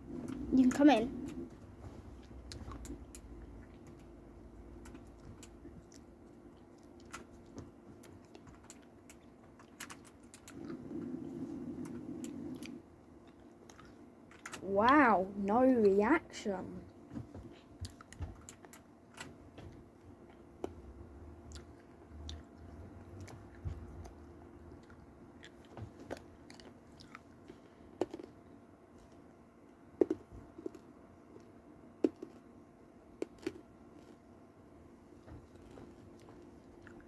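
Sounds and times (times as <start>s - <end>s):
chewing hard candy: 21.4s - 29.2s, 30.0s - 32.5s, 33.2s - 33.7s.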